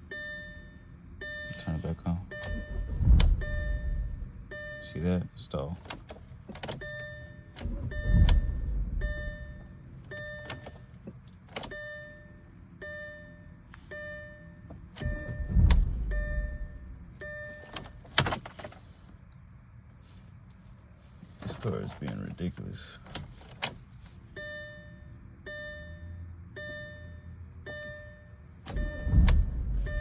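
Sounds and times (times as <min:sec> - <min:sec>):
dashboard warning chime: 0:00.0 - 0:05.6, 0:06.2 - 0:18.7, 0:24.3 - 0:30.0
engine cranking rumble: 0:02.3 - 0:04.6, 0:07.5 - 0:11.4, 0:14.9 - 0:18.6, 0:28.7 - 0:30.0.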